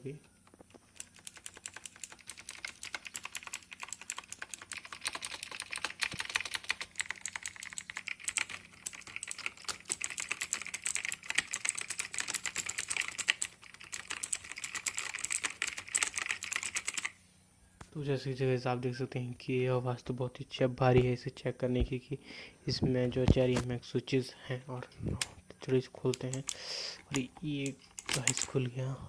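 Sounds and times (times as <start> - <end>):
rapid mechanical keyboard typing: 0.4 - 17.2, 26.1 - 28.6.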